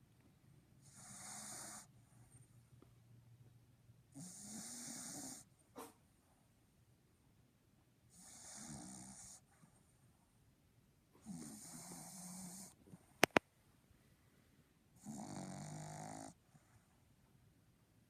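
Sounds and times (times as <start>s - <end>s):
dog snoring raspily: 0.8s - 1.9s, 4.1s - 5.5s, 8.1s - 9.4s, 11.2s - 12.8s, 15.0s - 16.4s.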